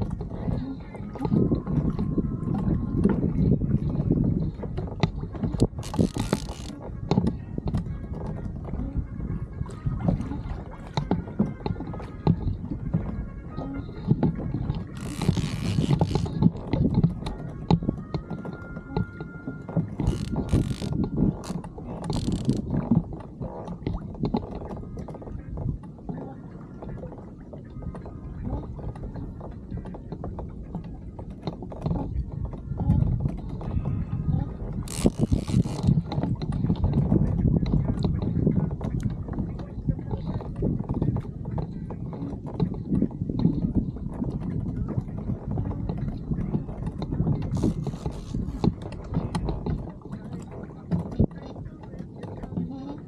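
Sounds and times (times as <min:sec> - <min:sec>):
water sloshing against hull: 0:00.0 - 0:53.0
fishing reel clicking: 0:05.8 - 0:06.7, 0:15.0 - 0:16.3, 0:20.1 - 0:22.6, 0:34.9 - 0:35.9.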